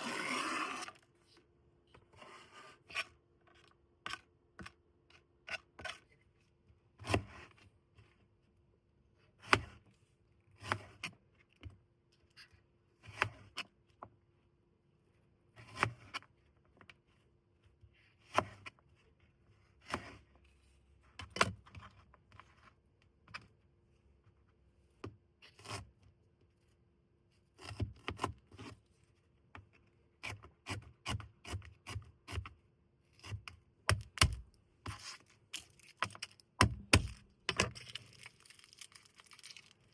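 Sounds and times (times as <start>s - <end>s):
knife chopping on wooden board: 33.9s - 35.0s, 36.6s - 37.7s.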